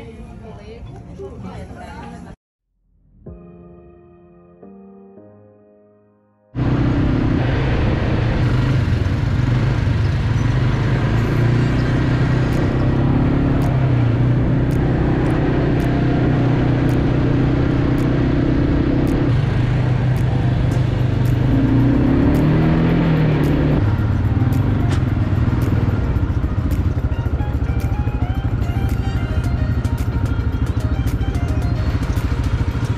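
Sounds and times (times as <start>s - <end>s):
quad bike engine running: 6.6s - 32.9s.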